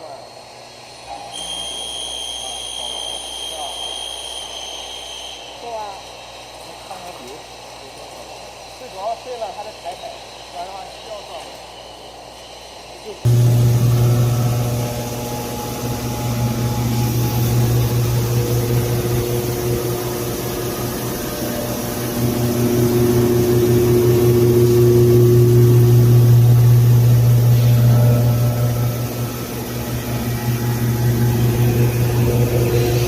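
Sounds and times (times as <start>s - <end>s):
milling machine running: 13.3s - 33.0s.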